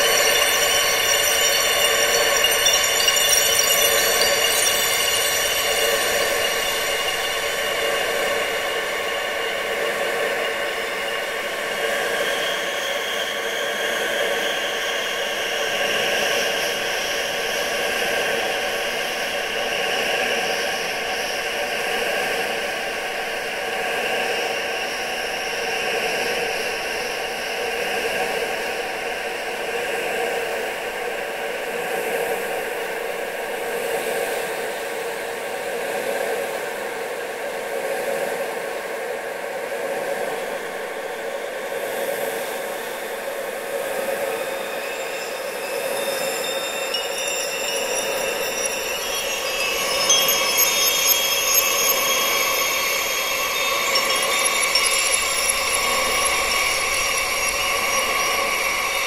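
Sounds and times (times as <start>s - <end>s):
wind rushing with tones: 0.0s - 12.7s, 43.4s - 59.0s.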